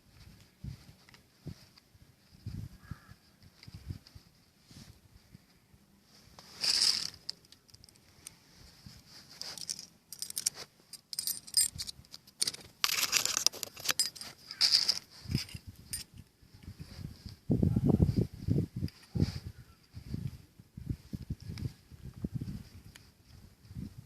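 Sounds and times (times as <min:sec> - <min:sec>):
metal parts clinking: 0:06.5 - 0:08.4, 0:09.4 - 0:16.2.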